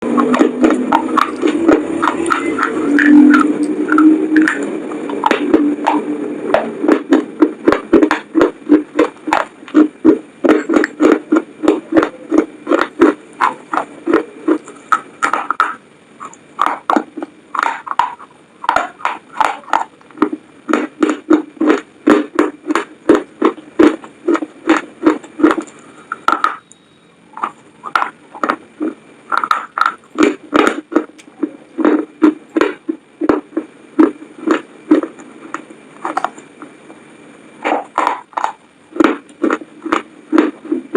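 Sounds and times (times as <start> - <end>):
chewing crunchy fries: 4.4 - 26.6, 27.4 - 35.1, 37.9 - 40.7.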